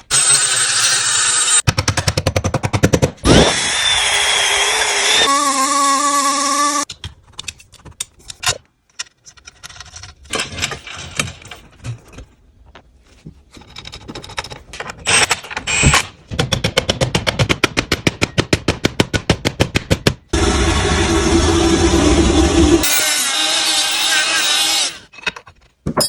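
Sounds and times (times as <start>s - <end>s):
power tool whining: 3.2s - 6.9s, 20.4s - 25.1s
tools clicking and knocking: 13.5s - 20.1s.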